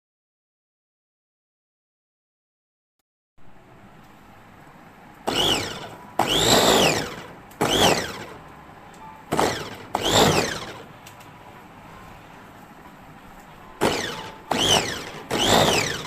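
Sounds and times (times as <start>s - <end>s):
food chopper motor whine: 5.3s - 8.4s, 9.3s - 10.8s, 13.8s - 16.0s.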